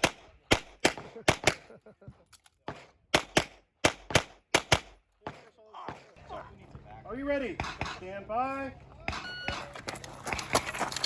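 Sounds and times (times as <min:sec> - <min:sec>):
pistol shots: 0:00.0 - 0:01.7, 0:02.7 - 0:06.0.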